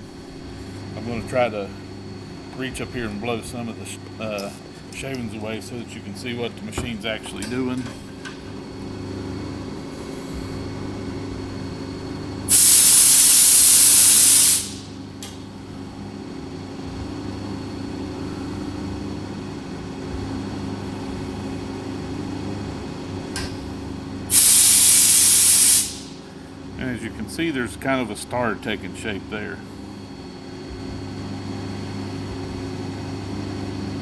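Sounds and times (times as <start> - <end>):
compressed air blasts: 12.5 - 14.9, 24.3 - 26.2.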